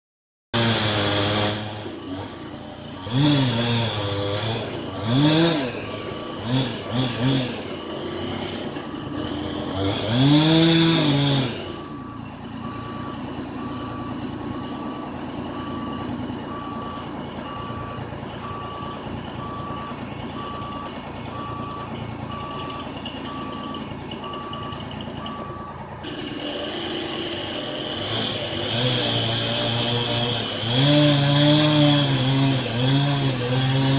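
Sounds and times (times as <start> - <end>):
louder motor: 0.6 - 12.0, 26.0 - 33.9
engine revving: 0.6 - 33.9
engine running: 0.6 - 33.9
truck reversing alarm beeping: 0.6 - 33.9.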